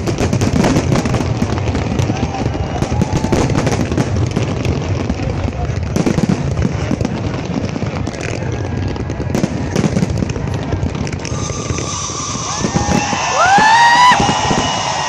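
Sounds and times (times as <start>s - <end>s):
firework bangs: 0.0s - 15.0s
fireworks crackling and popping: 0.0s - 15.0s
high whistling fireworks: 0.0s - 15.0s.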